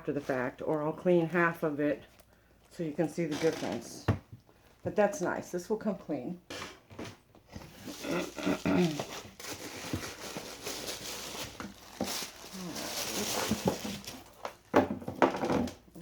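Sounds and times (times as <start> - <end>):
packaging rustling and crinkling: 7.4 - 16.0.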